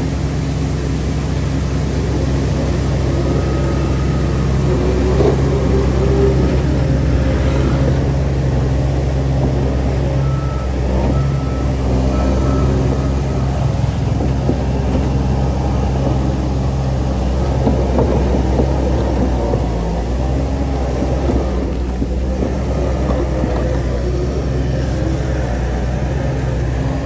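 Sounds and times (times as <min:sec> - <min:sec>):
heavy diesel engine running: 0:00.0 - 0:27.0
reversing alarm beeps: 0:02.0 - 0:19.2.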